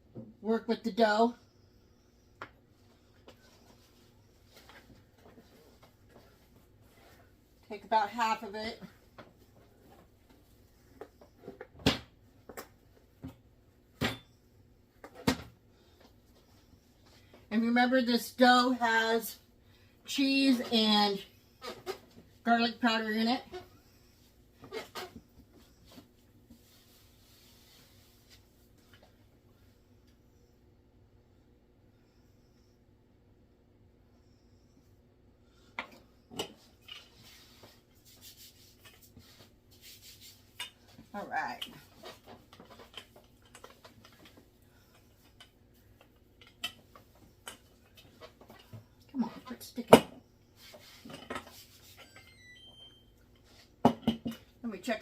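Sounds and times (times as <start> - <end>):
bread dough rubbing on table: 24.6 - 28.8, 37.2 - 40.6.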